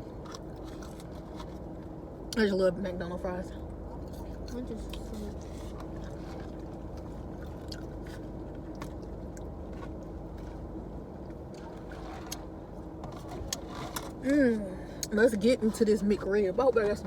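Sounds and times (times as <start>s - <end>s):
car cabin hum: 0.0s - 17.0s
chewing fries with mouth smacks: 0.1s - 1.8s, 3.9s - 12.5s.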